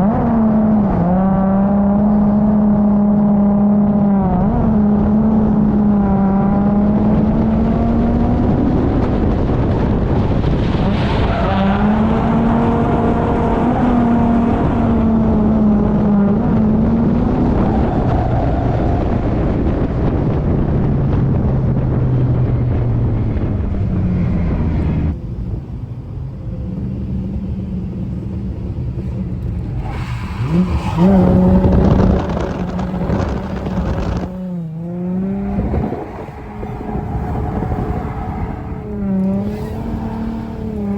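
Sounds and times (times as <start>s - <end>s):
car engine revving: 0.0s - 40.9s
tyre noise: 26.3s - 40.9s.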